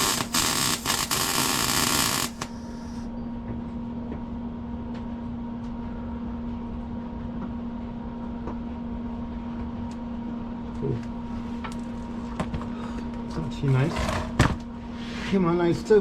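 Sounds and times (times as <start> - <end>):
even hiss: 0.0 - 3.0
mechanical hum: 0.0 - 16.0.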